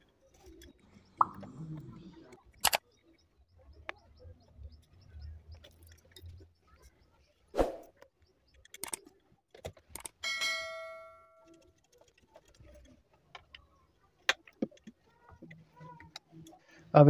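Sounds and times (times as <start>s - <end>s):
tools clicking and tapping: 8.5s - 16.6s
ringing metal clink: 10.2s - 11.6s.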